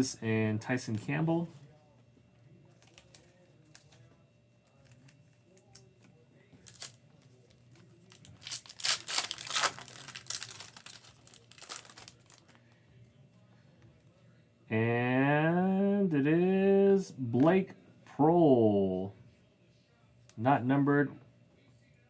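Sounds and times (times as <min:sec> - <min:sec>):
foil wrapper tearing and crinkling: 0:02.8 - 0:03.8, 0:06.6 - 0:07.0, 0:08.0 - 0:12.6.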